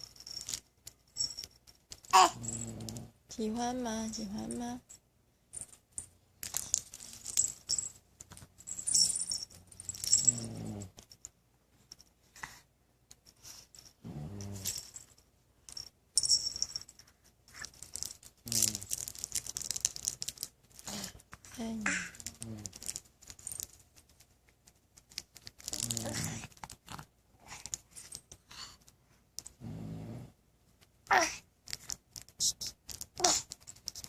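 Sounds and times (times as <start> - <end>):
quiet breaths: 6.5 - 15.9, 20.7 - 24.8, 25.6 - 34.0
man snoring: 29.6 - 30.3.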